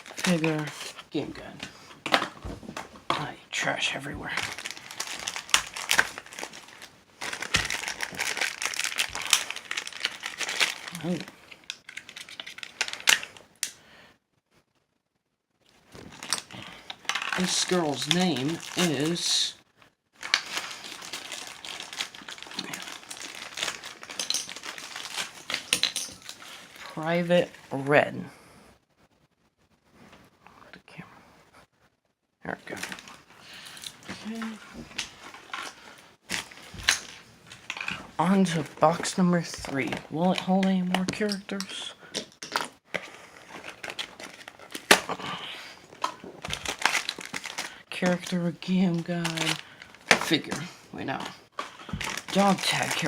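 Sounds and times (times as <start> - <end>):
packaging crinkling and rustling: 0.0 - 3.2, 4.3 - 13.8, 15.7 - 27.7, 32.6 - 53.0
packaging clicks: 4.4 - 13.8, 16.1 - 19.3, 20.2 - 26.9, 39.9 - 45.2, 45.9 - 48.3, 48.9 - 50.7, 51.6 - 53.0.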